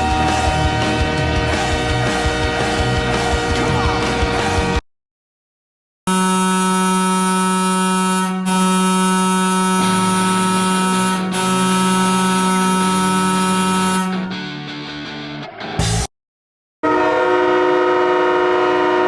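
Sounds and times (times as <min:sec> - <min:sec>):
goal horn blast: 0:06.1 - 0:14.5, 0:16.8 - 0:19.0.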